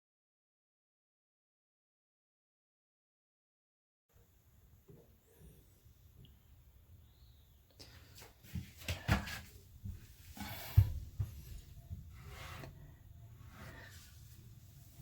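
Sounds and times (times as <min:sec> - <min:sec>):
rubbing and scraping: 0:08.7 - 0:15.0.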